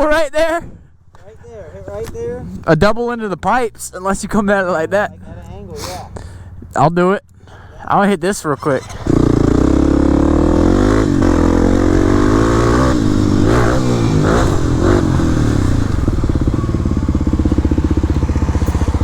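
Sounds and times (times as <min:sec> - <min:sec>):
dirt bike engine revving: 0:08.6 - 0:19.0.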